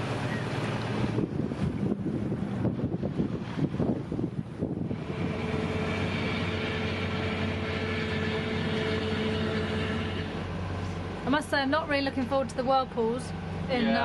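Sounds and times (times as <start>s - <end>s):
wind buffeting microphone: 0.0s - 9.0s
steady mechanical drone: 0.0s - 14.0s.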